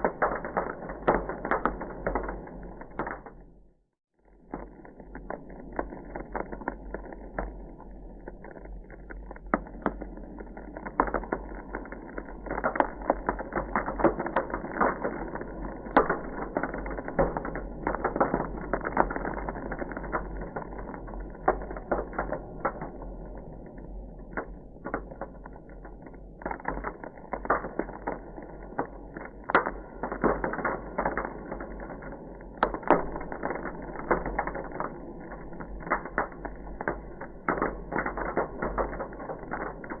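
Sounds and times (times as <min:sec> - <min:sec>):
ice crackling: 0:32.4 - 0:40.0.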